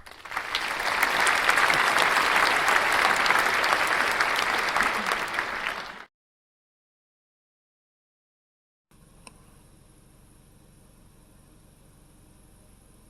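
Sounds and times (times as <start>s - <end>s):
crowd applause: 0.0s - 6.1s.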